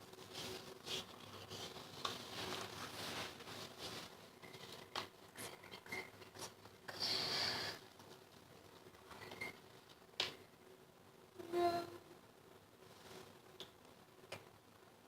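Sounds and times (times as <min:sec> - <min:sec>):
slime rubbing and scraping: 0:00.0 - 0:05.0.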